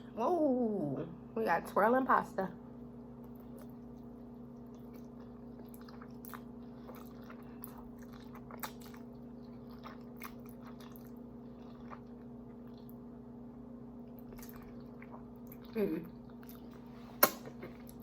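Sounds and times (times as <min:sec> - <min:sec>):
low electrical hum: 0:00.0 - 0:18.0
wet chewing smacks: 0:03.2 - 0:13.0, 0:14.1 - 0:18.0.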